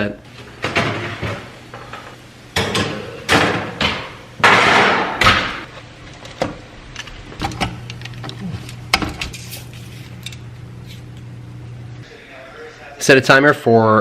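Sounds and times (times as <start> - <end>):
kitchen knocks and clatters: 0.6 - 6.6, 8.9 - 9.6.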